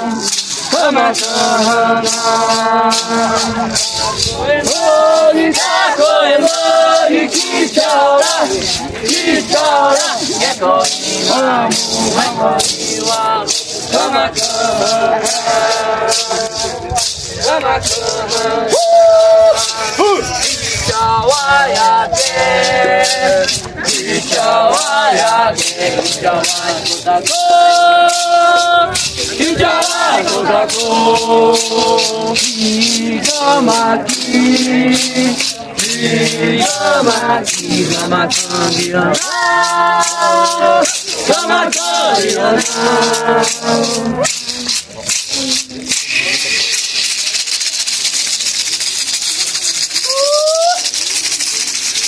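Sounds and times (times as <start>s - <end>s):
group of voices chanting: 0.0s - 45.9s
maracas shaken in a beat: 0.0s - 52.0s.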